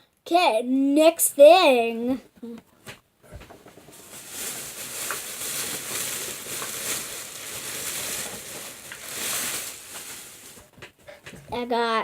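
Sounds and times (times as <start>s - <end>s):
plastic packaging crinkling: 3.8s - 10.9s.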